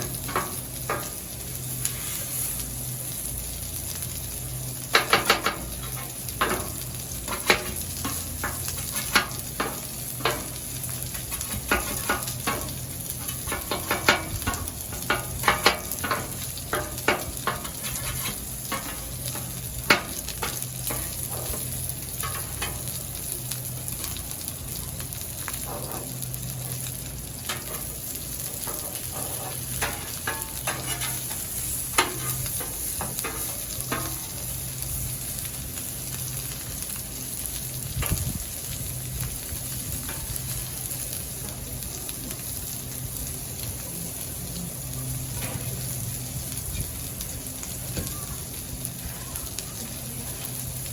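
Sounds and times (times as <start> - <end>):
food sizzling on griddle: 0.0 - 50.9
metal spatula scraping steel: 15.5 - 19.5, 28.6 - 34.1.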